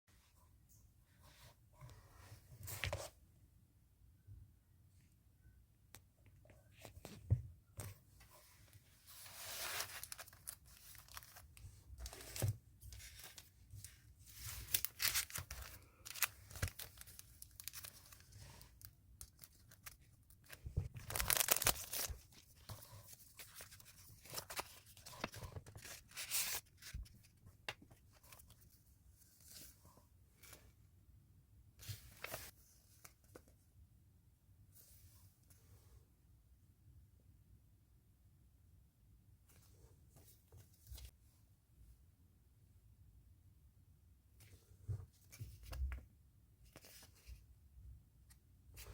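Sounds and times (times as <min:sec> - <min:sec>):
packaging tearing and rustling: 0:14.7 - 0:18.2, 0:21.0 - 0:22.2.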